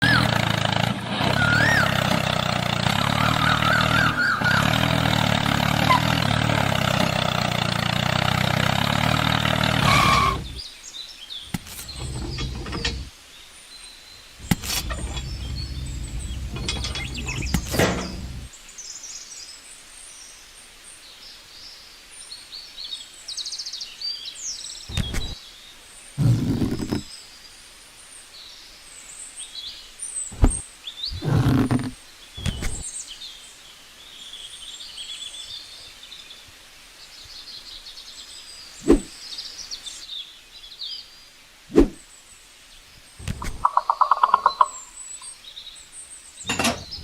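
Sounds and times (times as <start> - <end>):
small motor running: 0.0 - 10.6, 11.5 - 13.1, 14.4 - 18.5
birds chirping: 0.0 - 19.0, 24.5 - 27.4, 29.4 - 36.3, 37.0 - 41.1, 41.7 - 47.0.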